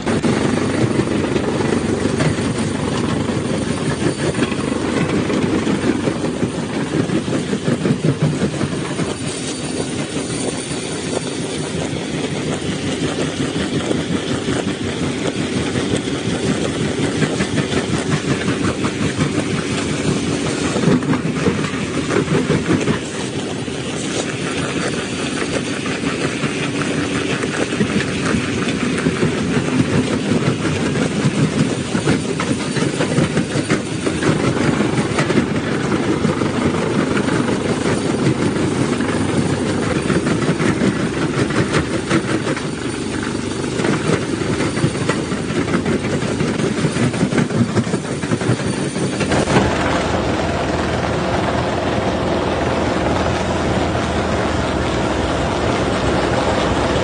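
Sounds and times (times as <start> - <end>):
deep steady rumble: 49.2 - 57.0.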